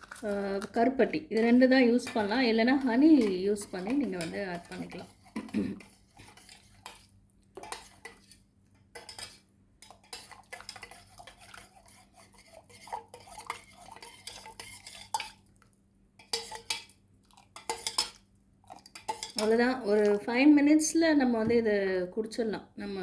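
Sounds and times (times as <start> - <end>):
spoon stirring and clinking: 1.4 - 15.4, 16.2 - 20.2.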